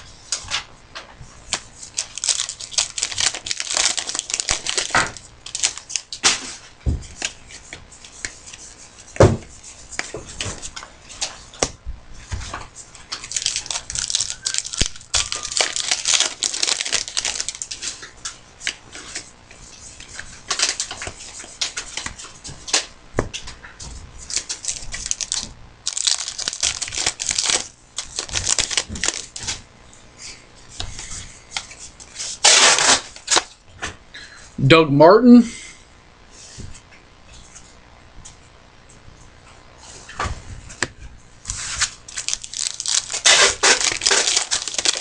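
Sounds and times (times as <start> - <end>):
cards rustling: 1.5 - 6.4, 12.4 - 19.3, 24.2 - 29.6, 41.5 - 45.0
card packs torn open: 1.5 - 6.5, 13.2 - 18.1, 24.3 - 29.6, 32.3 - 33.6, 41.5 - 45.0
wrappers crinkling: 1.5 - 6.6, 12.9 - 19.3, 24.2 - 29.6, 31.6 - 33.6, 41.4 - 45.0.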